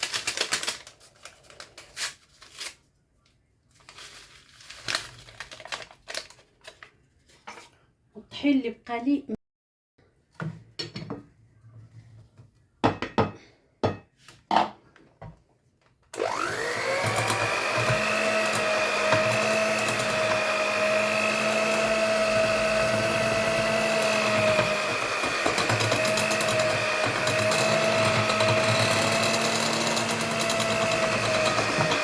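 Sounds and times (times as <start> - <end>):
bowl and utensils knocking: 10.8 - 11.3
electric mixer whining: 16.2 - 32.0.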